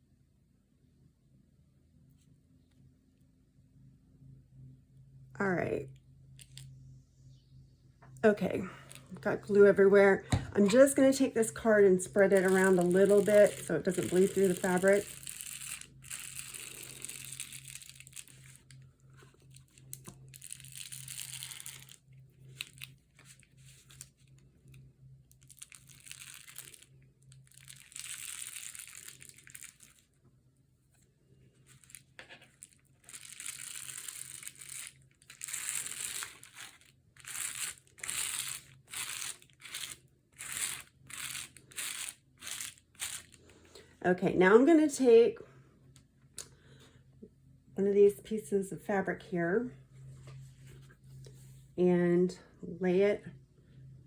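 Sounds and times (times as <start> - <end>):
faint low hum: 0.0 - 54.0.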